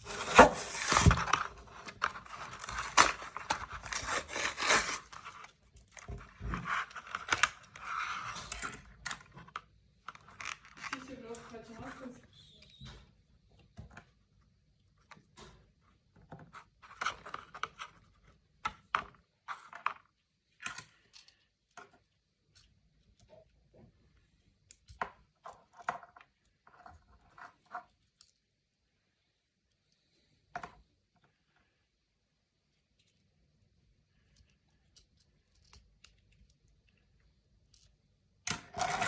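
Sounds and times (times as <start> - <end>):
packaging rustling: 0.0 - 5.5.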